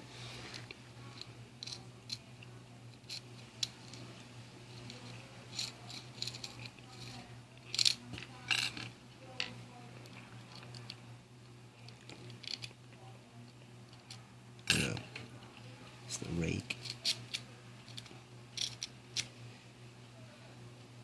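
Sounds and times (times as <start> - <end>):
low steady hum: 0.0 - 21.0
lock picks clicking and scraping: 1.6 - 2.2, 4.8 - 8.9, 16.8 - 19.3.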